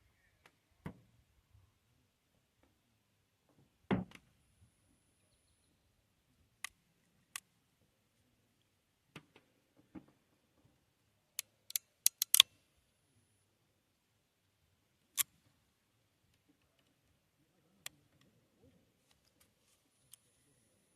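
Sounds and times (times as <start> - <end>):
connector parts clicking: 11.7 - 12.5.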